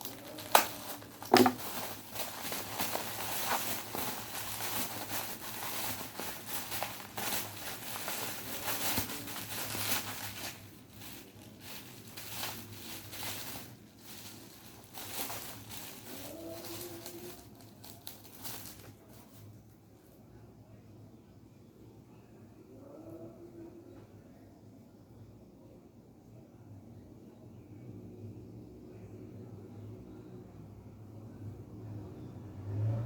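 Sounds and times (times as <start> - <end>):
packaging crinkling and rustling: 0.0 - 19.6.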